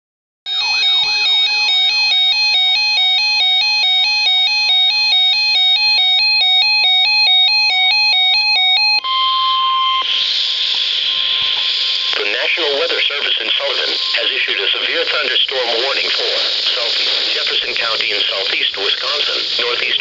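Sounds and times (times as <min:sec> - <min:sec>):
alternating electronic alert beeping: 0:00.5 - 0:10.2, 0:11.0 - 0:15.4
steady high alert tone: 0:00.5 - 0:20.0
hiss: 0:10.1 - 0:12.2.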